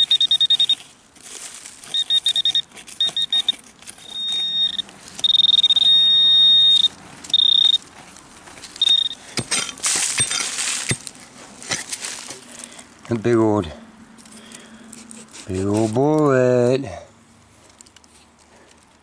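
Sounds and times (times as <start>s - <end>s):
high electronic beeping: 0.0s - 0.8s, 1.9s - 7.8s, 8.8s - 9.2s
scraping in dirt: 0.0s - 13.3s, 14.2s - 16.4s.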